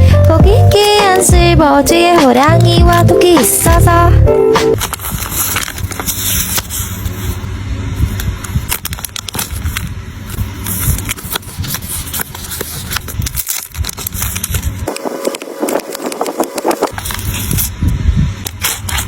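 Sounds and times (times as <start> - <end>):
low handling rumble: 0.0 - 4.3
card packaging crackling and rustling: 4.8 - 17.8.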